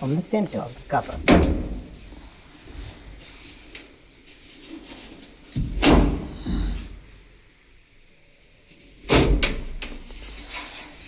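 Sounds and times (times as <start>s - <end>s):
handling rustle: 0.0s - 5.8s.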